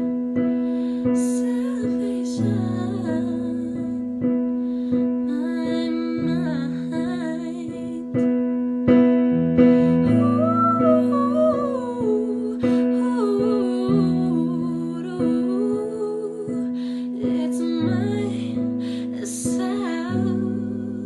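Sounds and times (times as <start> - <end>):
woman singing: 0.0 - 8.6, 9.8 - 21.0.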